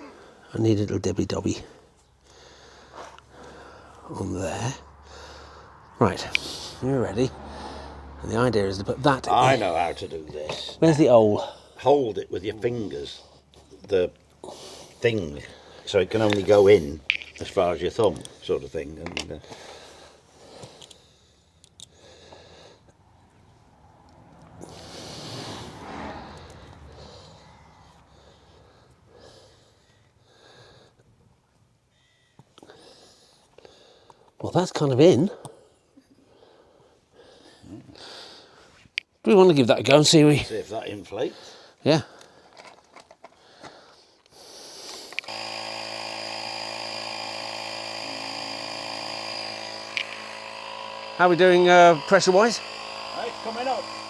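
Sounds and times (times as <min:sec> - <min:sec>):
man breathing out heavily: 0:01.8 - 0:04.1, 0:04.8 - 0:08.2, 0:14.4 - 0:15.9, 0:19.4 - 0:23.1, 0:24.6 - 0:31.0, 0:35.5 - 0:38.8, 0:43.4 - 0:45.2
electric tyre inflator running: 0:02.4 - 0:11.0, 0:11.9 - 0:30.5, 0:44.4 - 0:54.0
handling clicks: 0:16.1 - 0:18.4, 0:19.0 - 0:19.7.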